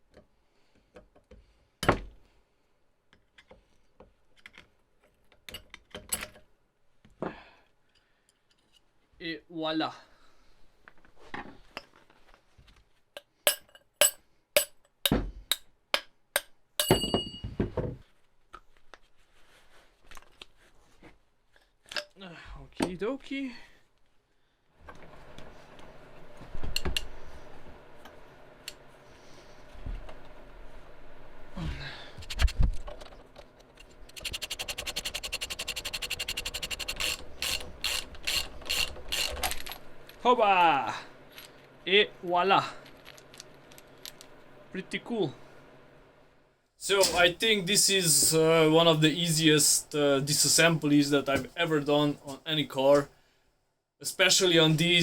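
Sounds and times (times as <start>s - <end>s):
metallic clatter with ringing: 13.5s - 14.7s, 16.8s - 17.4s
hammer striking metal: 13.5s - 17.5s
ratchet wrench clicking: 34.1s - 39.6s.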